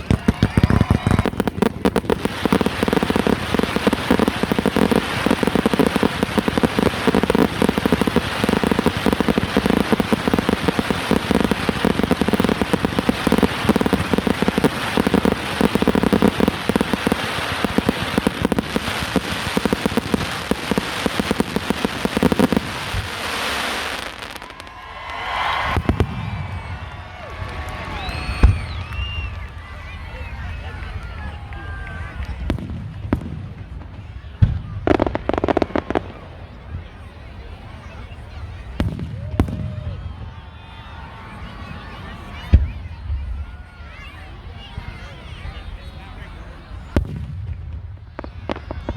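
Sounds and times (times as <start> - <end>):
fireworks crackling pops: 0.0 - 48.9.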